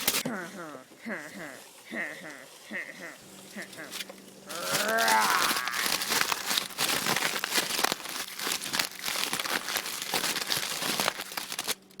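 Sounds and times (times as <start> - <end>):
aluminium foil crinkling: 3.4 - 12.0.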